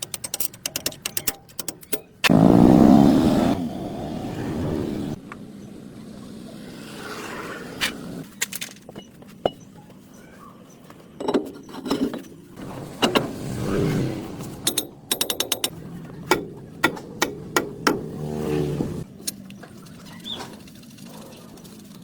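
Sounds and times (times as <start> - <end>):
metallic knocks and clicks: 0.0 - 2.3, 14.6 - 18.3.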